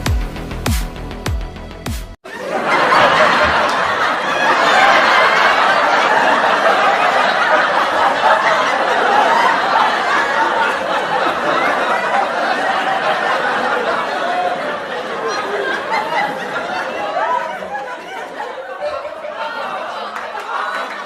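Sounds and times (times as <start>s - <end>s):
electronic music beat: 0.0s - 2.2s
studio audience laughing: 2.2s - 21.0s.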